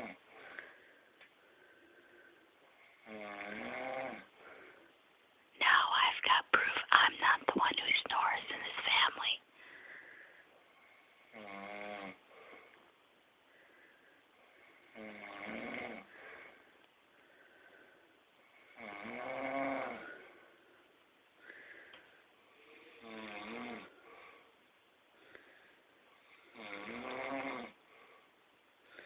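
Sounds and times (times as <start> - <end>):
faint breathing: 0.2 - 3.0, 4.3 - 11.2, 12.2 - 15.0, 16.0 - 18.7, 20.0 - 23.0, 23.9 - 26.5, 27.8 - 29.0
man snoring: 3.0 - 4.3, 11.3 - 12.2, 14.8 - 16.1, 18.7 - 20.2, 22.7 - 23.9, 26.4 - 27.8.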